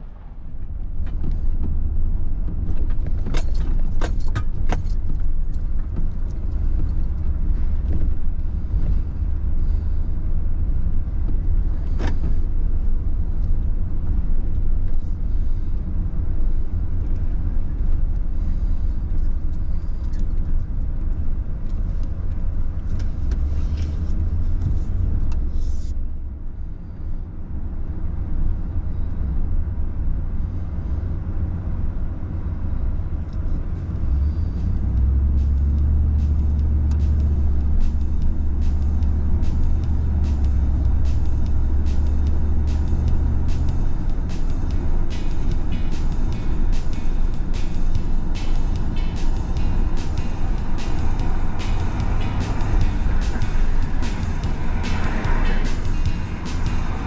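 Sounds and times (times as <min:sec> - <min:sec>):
car driving rumble: 0:00.0 - 0:57.0.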